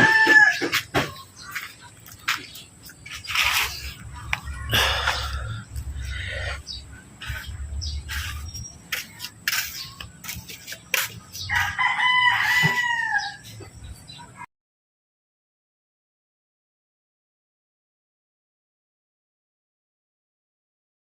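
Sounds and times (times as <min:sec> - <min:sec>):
rooster crowing: 0:00.0 - 0:00.8, 0:11.5 - 0:13.5.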